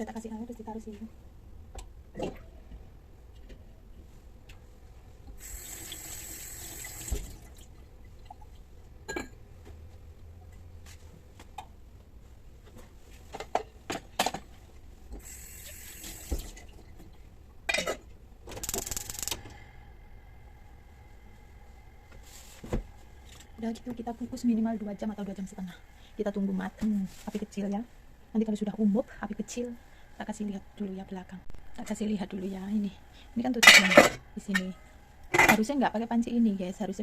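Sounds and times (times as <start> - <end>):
kitchen tap running: 5.4 - 7.6, 15.2 - 16.7
pots and lids clinking: 33.6 - 34.2.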